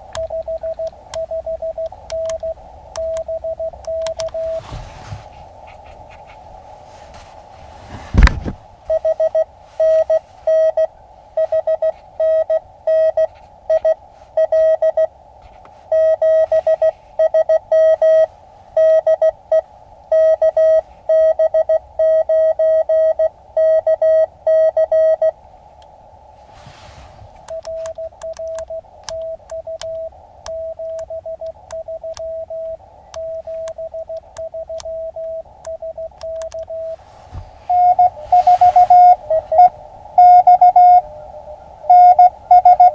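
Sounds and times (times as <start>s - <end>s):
receiver hiss: 0.0s - 42.9s
morse code beeps: 0.1s - 4.6s, 8.9s - 15.1s, 15.9s - 25.4s, 27.5s - 37.0s, 37.7s - 42.9s.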